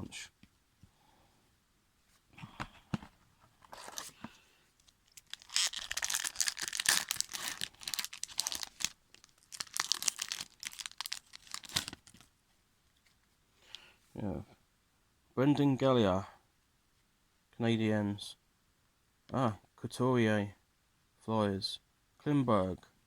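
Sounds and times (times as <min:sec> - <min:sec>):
plastic wrapper tearing and crumpling: 0:04.8 - 0:12.3.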